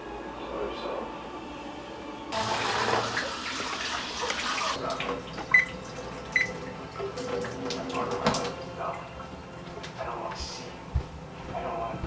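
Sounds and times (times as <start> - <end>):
tap water running: 2.4 - 10.1.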